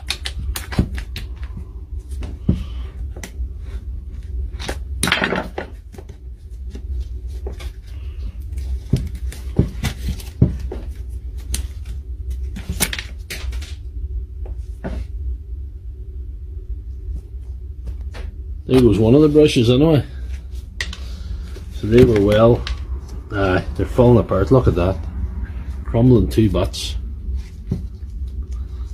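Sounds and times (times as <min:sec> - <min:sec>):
steady low hum: 0:00.0 - 0:28.9.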